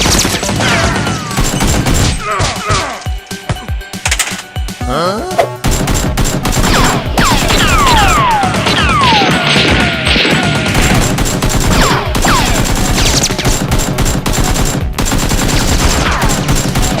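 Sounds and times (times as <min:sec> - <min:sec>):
rapid automatic gunfire: 0:00.0 - 0:02.2, 0:05.6 - 0:17.0.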